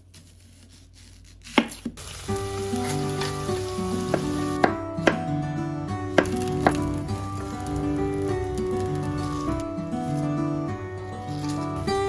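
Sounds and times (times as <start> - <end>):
food sizzling in a frying pan: 2.0 - 4.7
background music with melody: 2.1 - 12.0.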